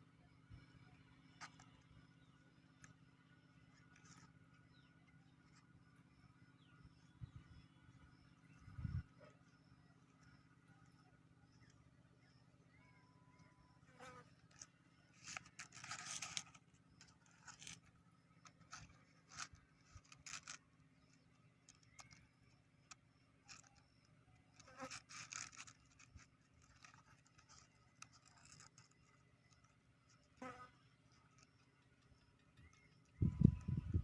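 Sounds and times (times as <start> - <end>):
low steady hum: 0.0 - 34.0
small objects scraping and clicking: 14.0 - 31.6.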